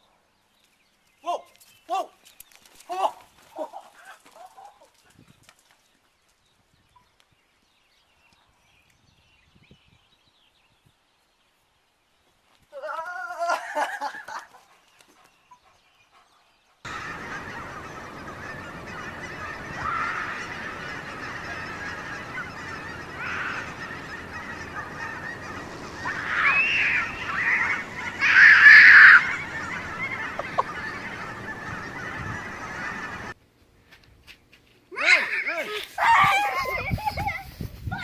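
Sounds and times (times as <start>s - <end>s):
geese honking: 16.9s - 33.4s
steady background noise: 16.9s - 34.0s.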